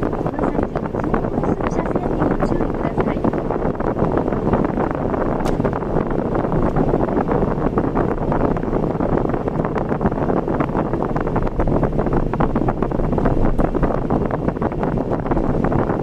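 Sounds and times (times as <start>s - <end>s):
car road and wind noise: 0.0s - 16.0s.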